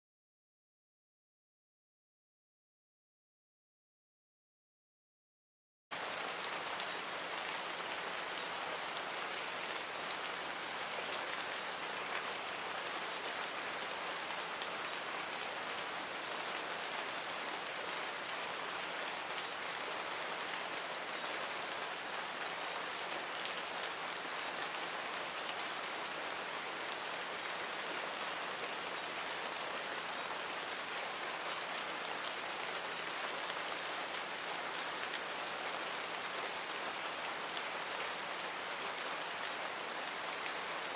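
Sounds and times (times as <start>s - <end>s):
steady rain hiss: 6.0s - 40.9s
raindrops ticking on a surface: 22.9s - 26.4s.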